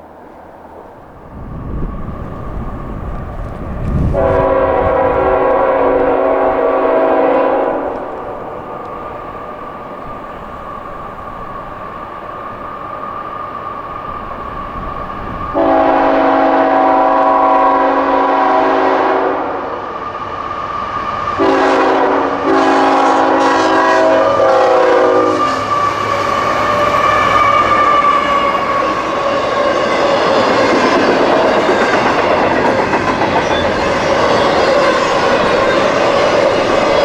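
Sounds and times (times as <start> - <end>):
train engine noise: 0.0 - 37.0
locomotive air horn blasts: 4.1 - 8.0, 15.6 - 19.6, 21.4 - 28.9.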